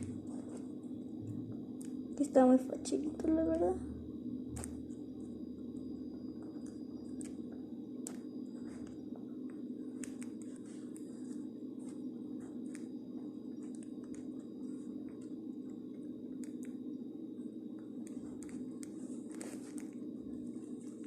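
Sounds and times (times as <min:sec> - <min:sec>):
low background hum: 0:00.0 - 0:21.0.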